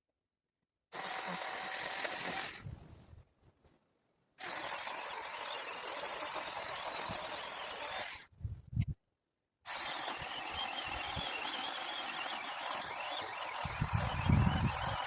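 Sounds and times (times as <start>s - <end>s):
mini chainsaw whining: 0.9s - 2.6s, 4.4s - 8.3s, 9.7s - 15.0s.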